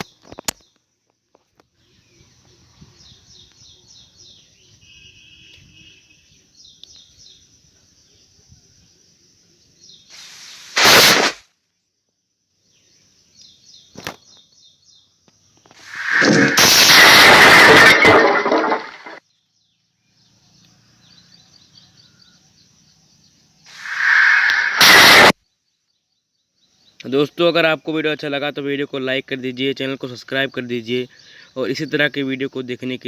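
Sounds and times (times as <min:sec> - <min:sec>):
sharp smack: 0:10.8 - 0:11.4, 0:23.8 - 0:25.3
punch hit sound effect: 0:15.8 - 0:19.2, 0:23.8 - 0:25.3
high chirps: 0:23.7 - 0:25.3.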